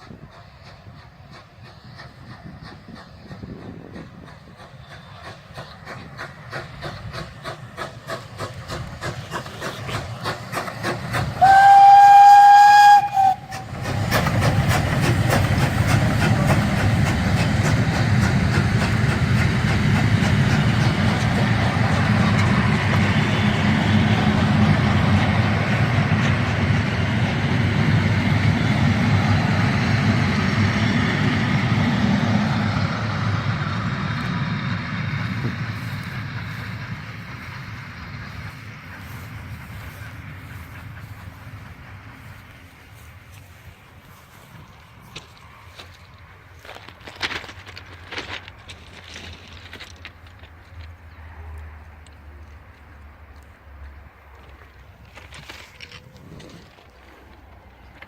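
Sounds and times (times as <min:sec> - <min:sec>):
steam locomotive chuffing: 0:00.0 - 0:49.8
train rumbling and clattering past: 0:00.0 - 0:58.0
steam whistle: 0:11.4 - 0:13.7.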